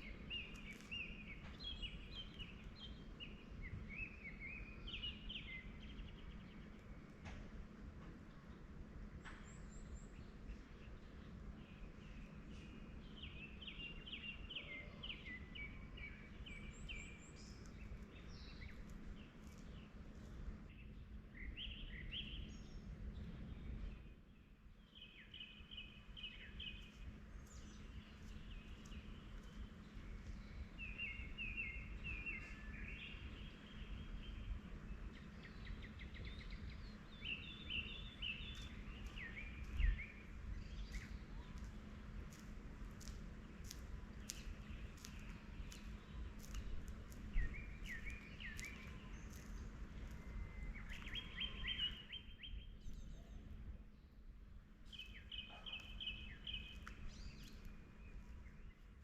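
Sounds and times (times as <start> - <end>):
birds chirping: 0.0 - 7.5, 8.4 - 59.0
low background rumble: 33.0 - 59.0.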